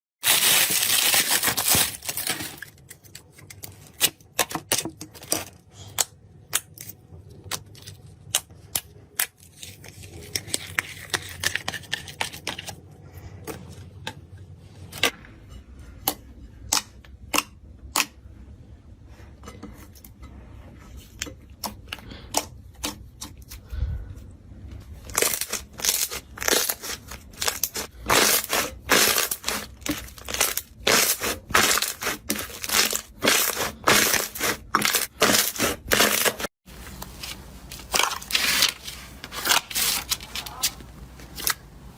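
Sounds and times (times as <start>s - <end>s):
slime crunching: 24.9s - 41.7s.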